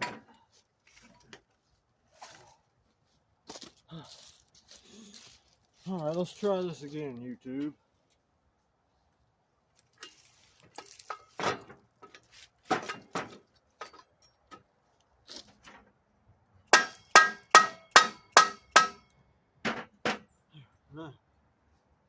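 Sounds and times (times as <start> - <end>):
hammer striking metal: 16.7 - 19.1.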